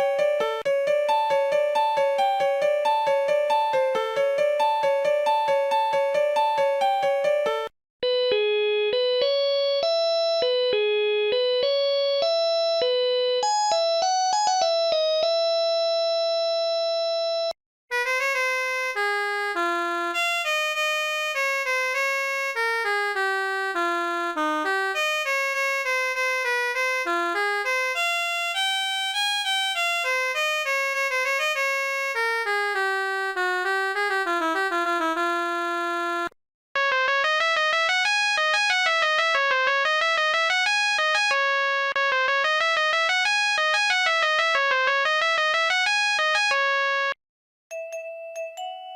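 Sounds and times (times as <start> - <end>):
synthesized phone ringtone melodies: 0.0 - 17.6, 36.8 - 48.9.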